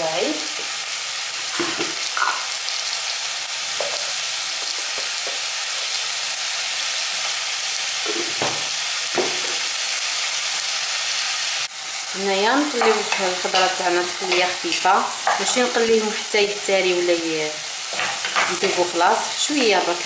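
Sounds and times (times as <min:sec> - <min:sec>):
vegetables sizzling in oil: 0:00.0 - 0:20.0.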